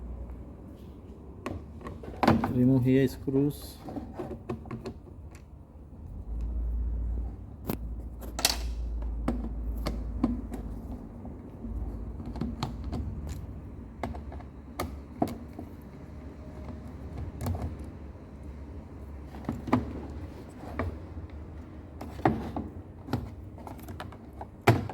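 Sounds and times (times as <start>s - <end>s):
low steady hum: 0.0s - 23.9s.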